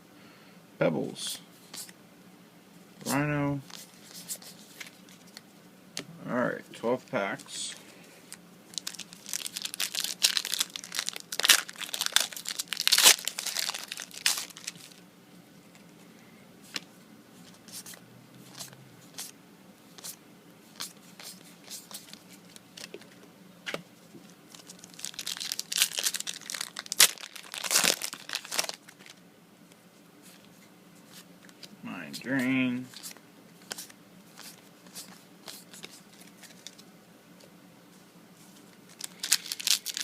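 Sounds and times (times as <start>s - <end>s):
trading cards being handled: 3.0s - 5.4s, 7.3s - 15.0s, 16.7s - 29.2s, 30.2s - 36.9s, 38.4s - 40.0s
foil wrappers tearing and crinkling: 8.7s - 15.0s, 24.5s - 29.2s, 38.9s - 40.0s.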